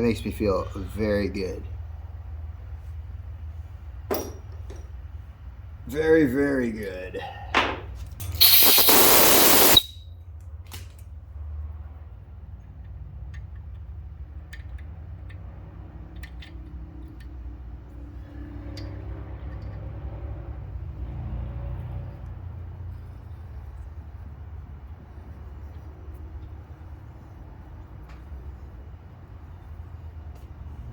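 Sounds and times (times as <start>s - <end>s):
loud hiss: 8.4s - 9.9s.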